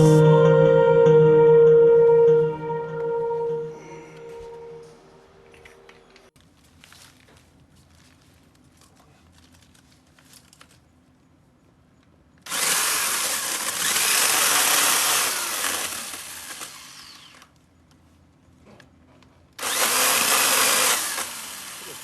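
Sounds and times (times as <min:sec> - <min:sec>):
electric chainsaw running: 0:12.5 - 0:17.4, 0:19.6 - 0:22.0.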